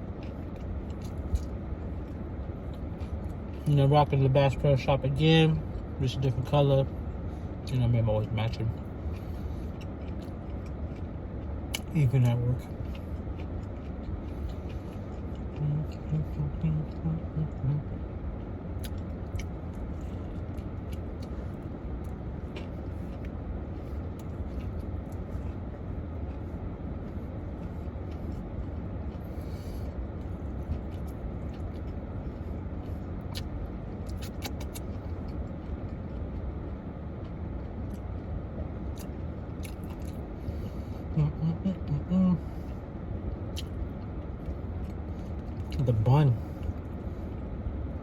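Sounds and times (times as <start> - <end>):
person chewing: 0.0 - 4.6, 8.2 - 41.2, 42.4 - 47.5
steady low rumble: 0.0 - 48.0
mouth clicks and smacks: 33.3 - 34.9.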